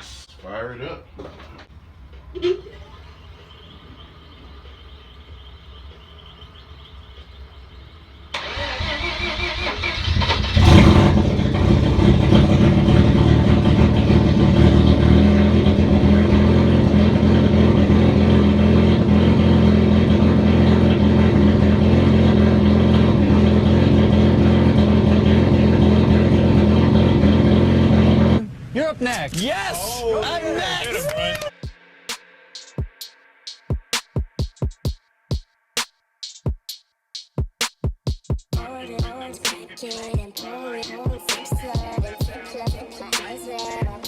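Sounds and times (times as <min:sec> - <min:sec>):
car engine revving and idling: 0:03.1 - 0:28.7
starter motor cranking: 0:08.3 - 0:14.9.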